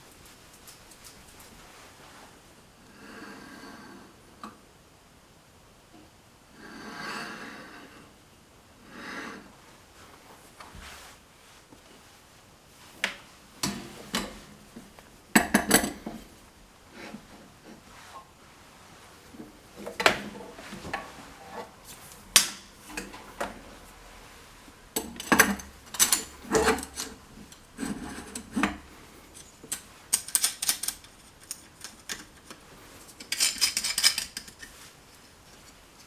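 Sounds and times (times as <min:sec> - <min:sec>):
metal tools clinking and scraping: 0:25.0 - 0:36.0.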